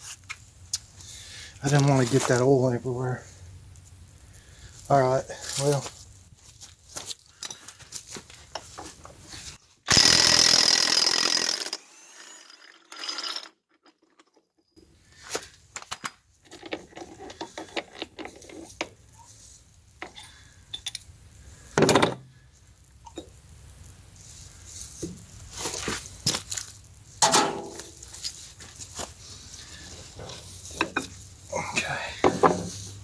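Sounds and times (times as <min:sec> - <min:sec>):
power tool running: 0:09.9 - 0:13.5.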